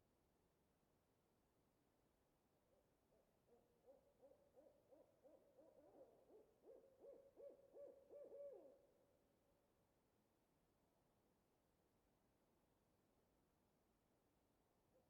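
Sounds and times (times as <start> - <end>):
owl hooting: 3.1 - 8.8.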